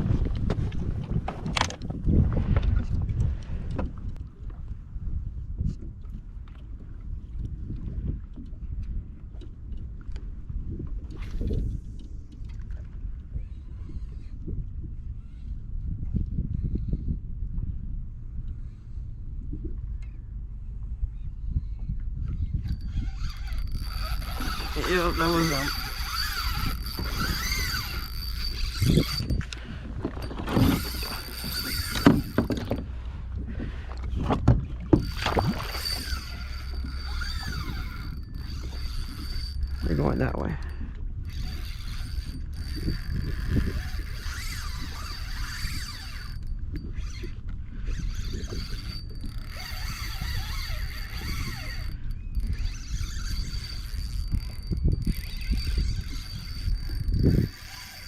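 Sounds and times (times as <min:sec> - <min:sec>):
water against hull: 0:00.0 - 0:58.0
pedal drive knocking and creaking: 0:22.4 - 0:33.0, 0:33.6 - 0:58.0.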